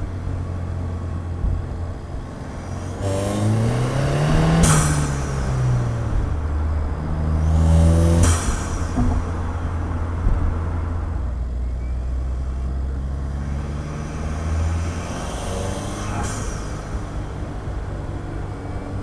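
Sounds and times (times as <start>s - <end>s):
car engine droning: 0.0s - 19.0s
turbo whoosh: 2.5s - 11.2s.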